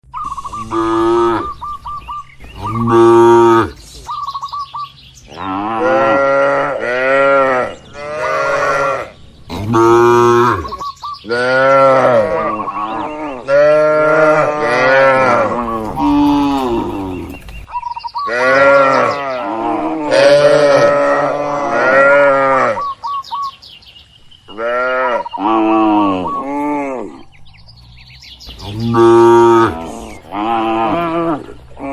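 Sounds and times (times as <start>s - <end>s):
cattle mooing: 0.5s - 1.6s, 2.6s - 3.8s, 5.3s - 17.4s, 18.3s - 22.9s, 28.6s - 31.9s.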